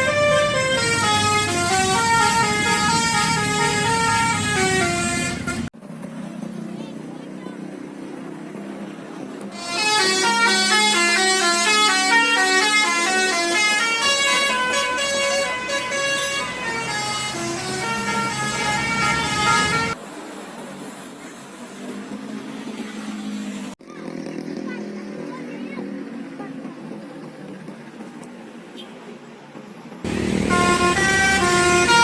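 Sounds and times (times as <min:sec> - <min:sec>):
multi-tone air horn melody: 0:00.0 - 0:05.7, 0:09.5 - 0:20.0, 0:30.1 - 0:32.0.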